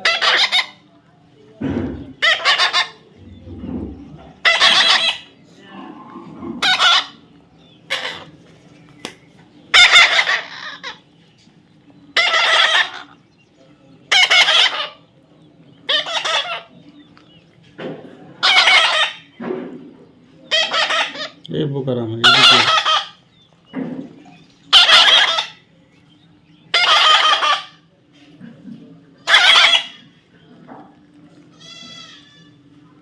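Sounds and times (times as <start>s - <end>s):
parrot calling: 0.0s - 0.8s, 2.2s - 3.4s, 4.4s - 5.4s, 6.2s - 8.3s, 9.7s - 11.1s, 12.1s - 13.2s, 14.1s - 15.0s, 15.8s - 16.7s, 18.4s - 19.3s, 20.5s - 21.5s, 22.2s - 23.3s, 24.7s - 25.7s, 26.7s - 27.8s, 29.2s - 30.2s.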